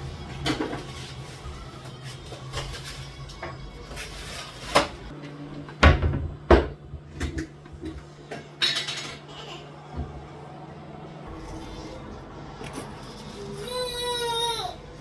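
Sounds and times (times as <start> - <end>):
dishes and utensils clinking: 0.1 - 5.1, 6.6 - 9.6.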